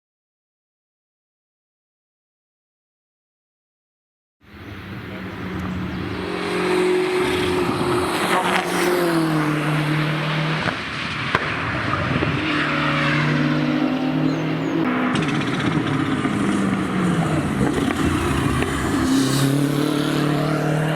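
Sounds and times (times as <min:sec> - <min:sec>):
race car engine running hard: 0:04.5 - 0:20.9.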